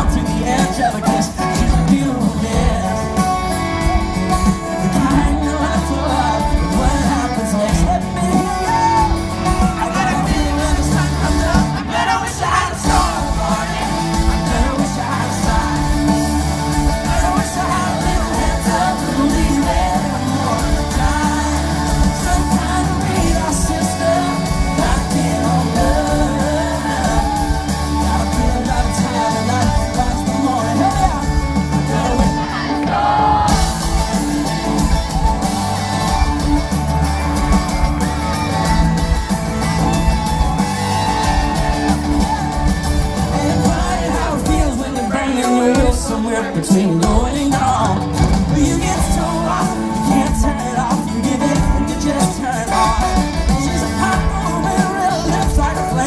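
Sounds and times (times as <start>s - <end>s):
live rock band playing: 0.0s - 56.0s
person singing: 0.0s - 56.0s.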